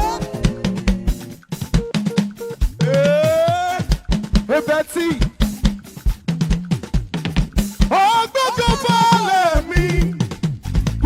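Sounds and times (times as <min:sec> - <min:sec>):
person singing: 0:00.0 - 0:01.4, 0:02.8 - 0:03.9, 0:04.5 - 0:05.3, 0:07.9 - 0:10.2
drum kit playing: 0:00.0 - 0:11.0.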